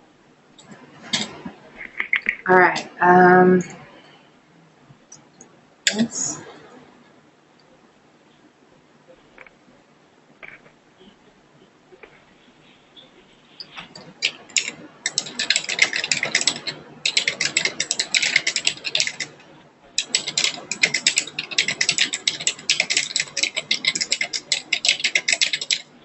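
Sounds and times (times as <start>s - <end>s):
typing on computer keyboard: 13.8s - 19.4s, 20.0s - 26.0s.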